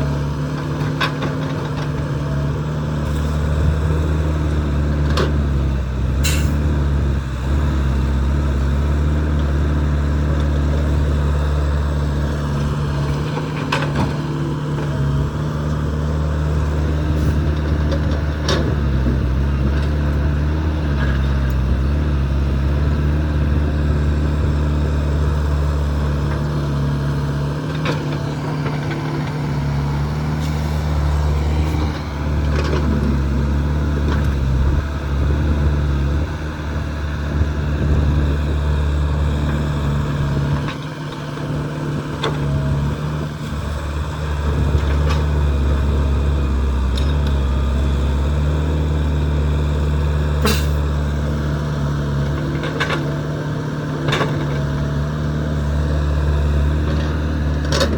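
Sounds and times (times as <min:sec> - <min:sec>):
excavator diesel engine running: 0:00.0 - 0:57.9
sharp metal clanks: 0:50.4 - 0:50.8.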